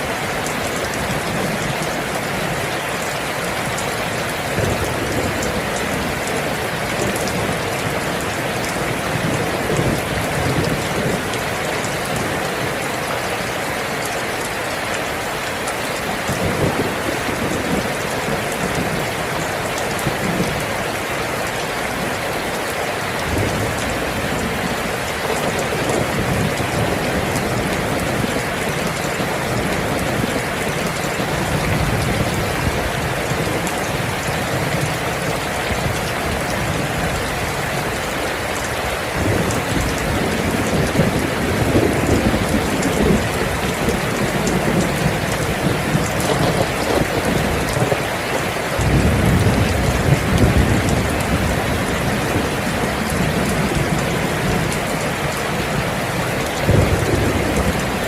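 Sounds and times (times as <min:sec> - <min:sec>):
heavy rain: 0:00.0 - 0:58.0
rolling thunder: 0:56.6 - 0:58.0.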